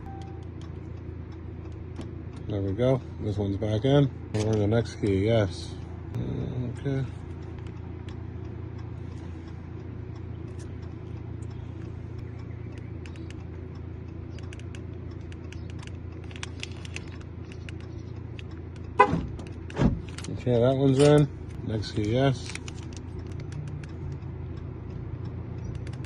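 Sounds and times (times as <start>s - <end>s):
vehicle engine idling: 0.0s - 26.0s
light clicks and taps: 6.8s - 26.0s.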